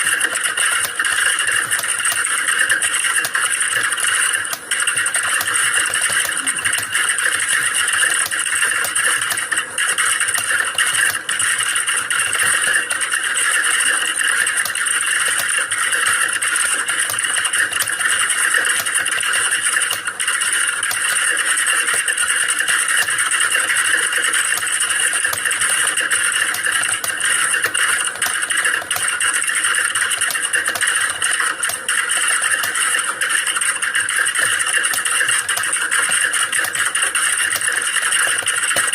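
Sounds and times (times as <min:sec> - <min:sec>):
rapid keyboard typing: 0:00.0 - 0:38.9.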